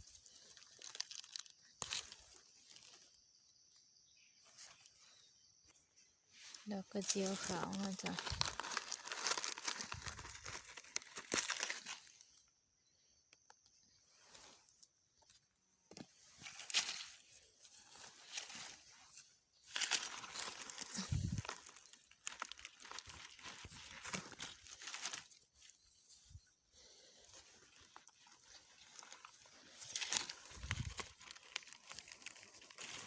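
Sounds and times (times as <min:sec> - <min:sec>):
dry leaves rustling and crackling: 0:00.0 - 0:03.1, 0:06.5 - 0:12.2, 0:16.4 - 0:26.0, 0:26.8 - 0:33.0.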